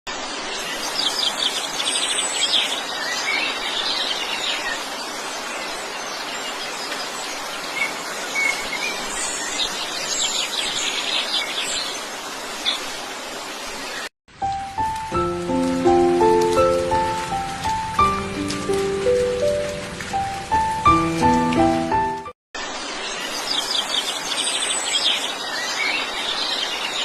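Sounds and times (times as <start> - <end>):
birds chirping and trilling: 0.3 - 14.1, 22.7 - 27.0.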